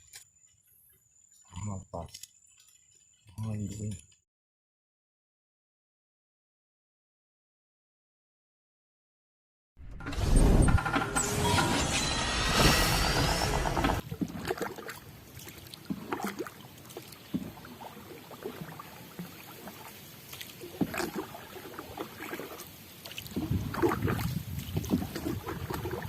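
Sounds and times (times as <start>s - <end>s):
small water sounds: 14.0s - 26.0s.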